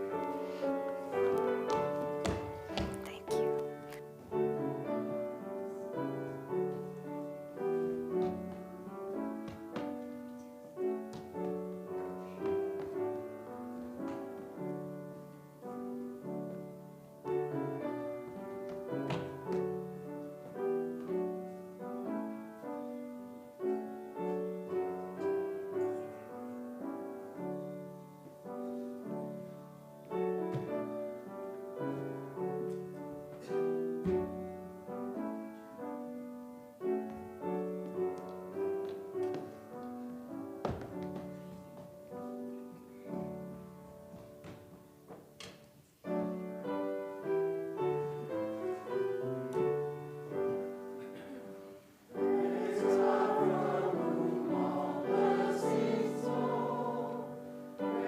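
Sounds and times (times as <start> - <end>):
slow solo piano: 0.0 - 58.0.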